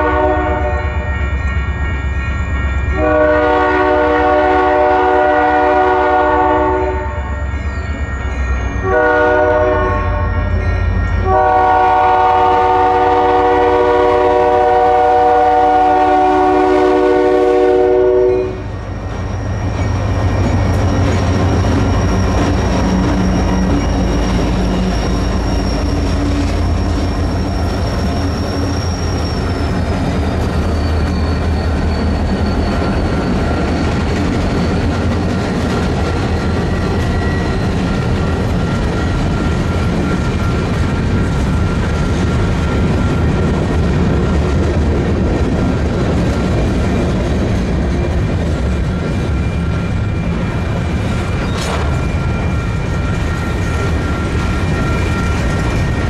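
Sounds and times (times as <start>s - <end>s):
locomotive air horn blasts: 0.0s - 1.1s, 2.9s - 7.4s, 8.8s - 10.4s, 11.2s - 18.7s
locomotive engine and train rumble: 0.0s - 56.0s.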